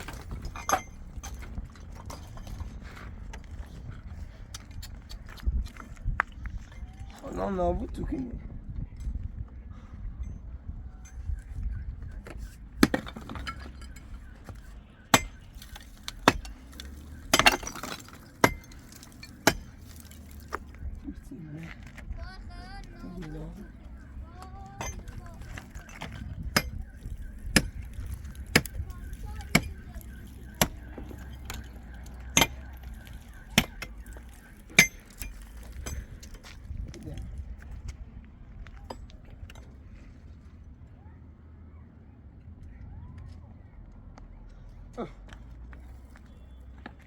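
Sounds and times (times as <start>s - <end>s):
hard objects clinking and knocking: 12.8s - 20.6s
hand tool striking hard surface: 15.1s - 16.6s, 30.5s - 31.6s, 32.3s - 33.9s, 34.7s - 36.1s.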